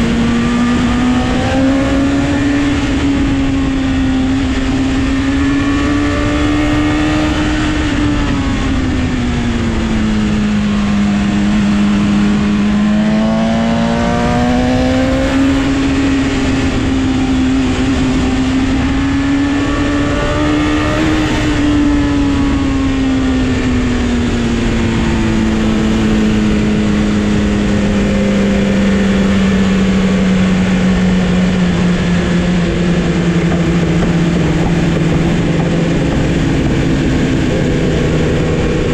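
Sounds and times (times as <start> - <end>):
motorcycle engine revving: 0.0 - 38.9
wind rushing: 25.0 - 38.9.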